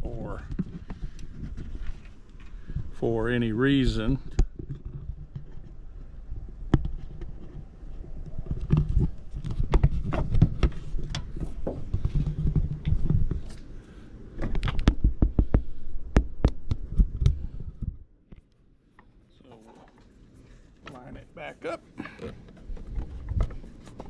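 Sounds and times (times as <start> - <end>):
sharp clicks and knocks: 14.4 - 18.6.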